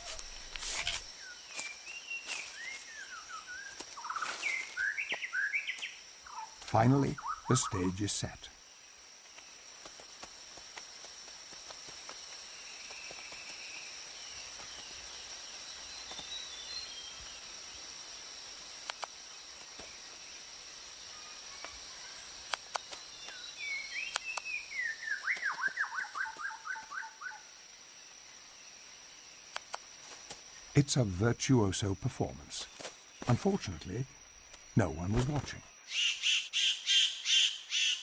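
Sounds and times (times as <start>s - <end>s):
bird calls: 0.0s - 8.4s, 21.1s - 27.5s, 35.0s - 38.0s
high insect drone: 0.0s - 38.0s
sharp clicks: 18.8s - 19.2s, 29.5s - 29.9s.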